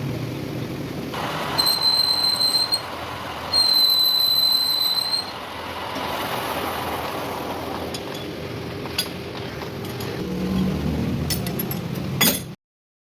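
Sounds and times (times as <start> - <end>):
lathe running: 1.1 - 10.3
boring tool squealing on metal: 1.5 - 5.4.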